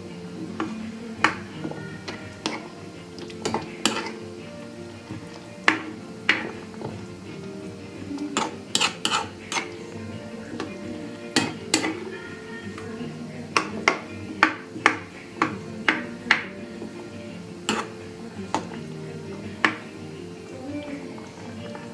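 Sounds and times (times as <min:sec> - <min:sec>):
background music: 0:00.0 - 0:21.9
metal utensil scraping a pot: 0:03.2 - 0:04.2, 0:08.2 - 0:09.8, 0:17.7 - 0:18.6.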